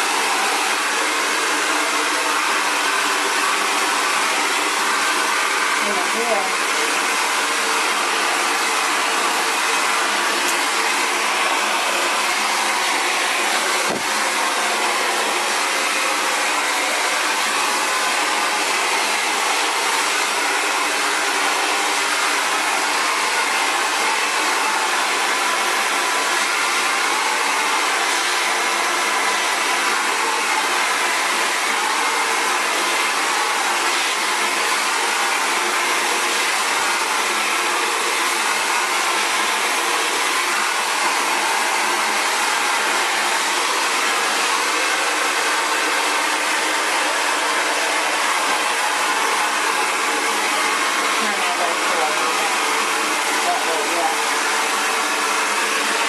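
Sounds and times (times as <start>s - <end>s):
hair dryer running: 0.0s - 56.0s.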